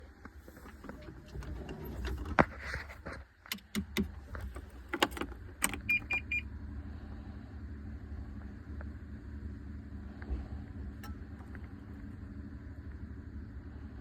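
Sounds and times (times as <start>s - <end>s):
low steady rumble: 0.0s - 14.0s
key and controls clicking: 3.5s - 6.4s.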